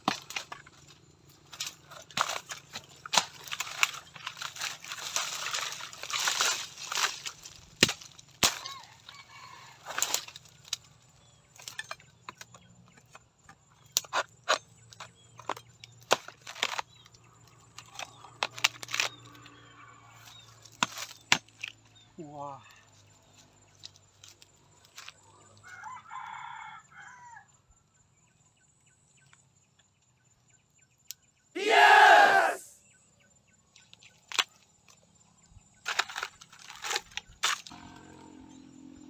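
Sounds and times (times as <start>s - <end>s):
sharp cracks and snaps: 0.0s - 9.2s, 13.9s - 19.5s, 33.8s - 34.7s, 35.8s - 37.8s.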